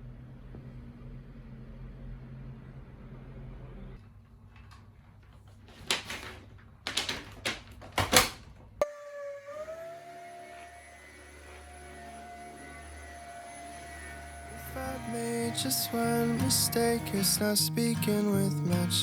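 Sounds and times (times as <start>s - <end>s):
background music: 13.4s - 19.0s.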